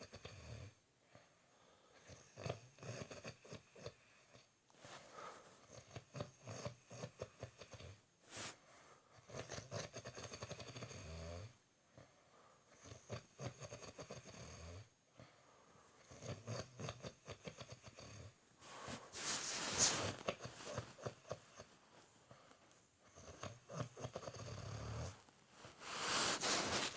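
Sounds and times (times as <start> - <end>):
hissing breath: 18.6 - 20.8, 25.8 - 26.9
person snoring: 23.2 - 25.2.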